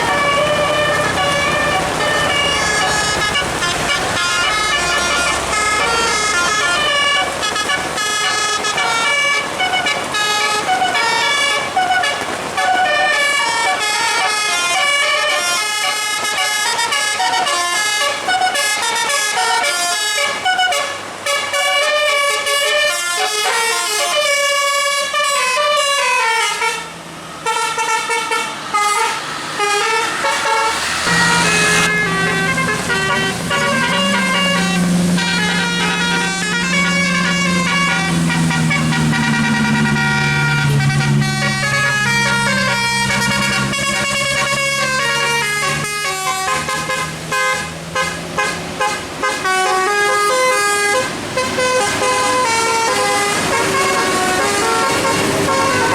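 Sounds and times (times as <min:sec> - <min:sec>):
musical air horn melody: 0:00.0 - 0:55.9.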